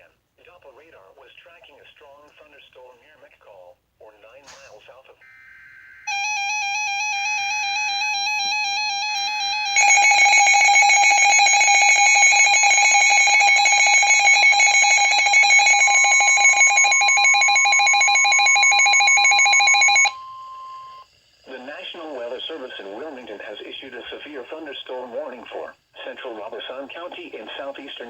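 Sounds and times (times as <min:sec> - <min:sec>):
warbling electronic alert alarm: 0:05.2 - 0:21.0
steady alarm tone: 0:05.2 - 0:24.1.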